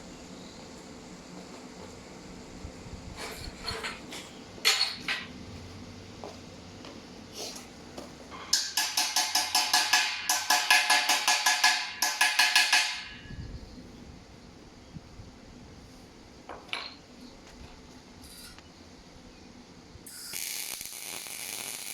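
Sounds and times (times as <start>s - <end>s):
ringing strikes on steel: 8.6s - 13.4s.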